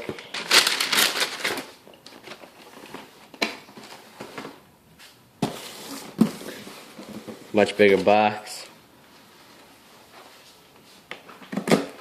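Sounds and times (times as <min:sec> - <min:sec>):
cardboard boxes rustling and scraping: 0:03.7 - 0:08.3.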